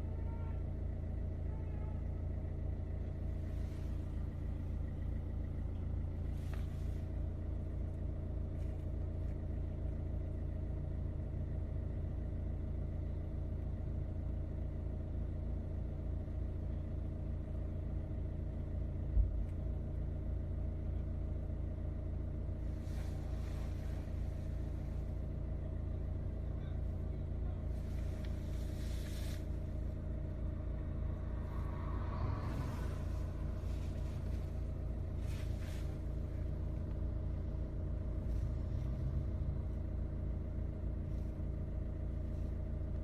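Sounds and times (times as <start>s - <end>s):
low mechanical hum: 0.0s - 43.0s.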